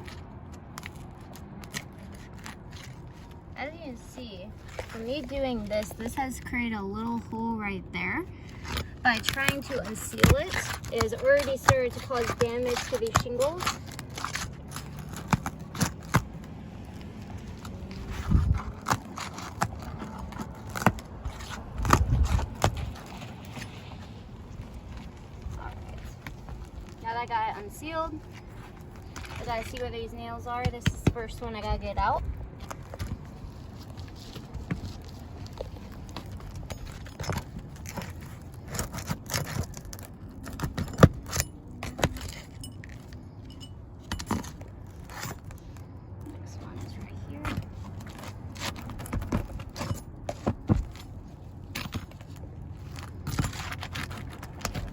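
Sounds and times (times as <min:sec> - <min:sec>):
rough scrapes: 0:08.4 - 0:54.9
shingles being pried loose: 0:08.6 - 0:24.0, 0:32.6 - 0:43.3, 0:47.4 - 0:54.9.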